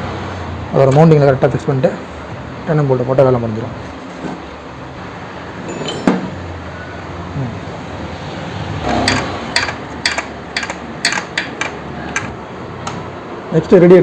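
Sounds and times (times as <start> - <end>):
tools and bolts clinking on metal: 5.6 - 6.4, 9.0 - 12.3.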